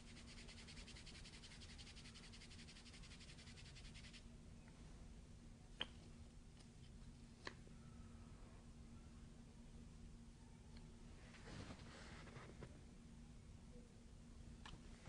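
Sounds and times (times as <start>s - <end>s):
scratchy rubbing of tape on skin: 0.0s - 4.2s
faint steady hum: 0.0s - 15.0s.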